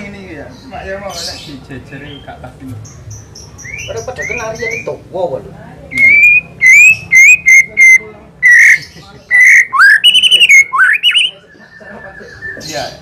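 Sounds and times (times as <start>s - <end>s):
bird trill: 2.9s - 5.0s, 5.9s - 13.0s
bird singing whistled notes: 5.9s - 13.0s.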